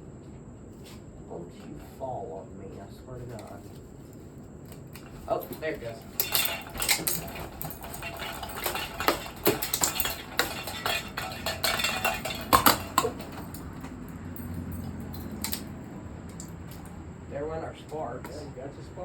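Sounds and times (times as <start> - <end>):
ceiling fan steady hum: 0.0 - 19.0
metallic clattering: 4.9 - 17.1
metal scraping on metal: 5.0 - 15.6
loud metal clanks: 5.0 - 15.9.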